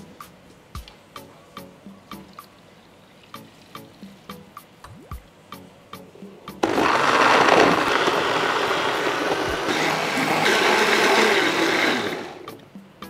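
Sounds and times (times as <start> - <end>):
electric blender running: 6.6 - 12.5.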